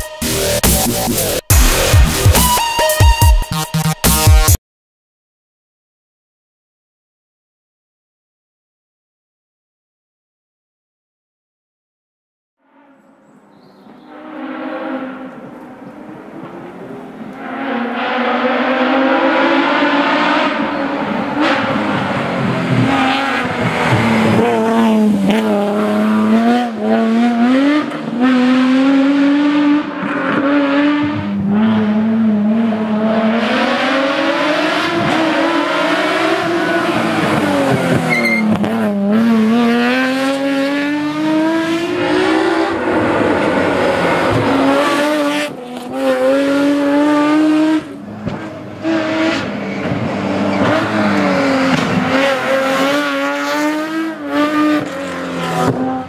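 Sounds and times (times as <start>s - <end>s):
car engine revving through gears: 12.8s - 56.0s.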